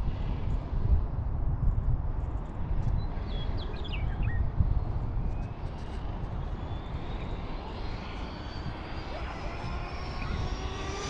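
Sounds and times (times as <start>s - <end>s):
wind buffeting microphone: 0.0s - 11.0s
high whine of electric motor: 4.4s - 11.0s.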